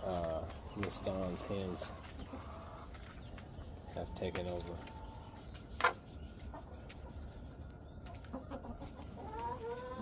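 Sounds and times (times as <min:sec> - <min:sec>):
hens clucking: 0:00.0 - 0:10.0
drawn-out rising chicken call: 0:08.2 - 0:10.0.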